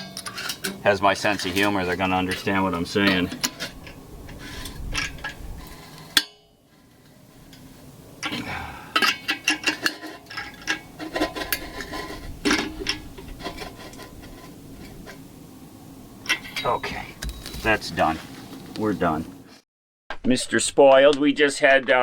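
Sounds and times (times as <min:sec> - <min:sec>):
small metallic clicks and knocks: 0:00.0 - 0:15.2.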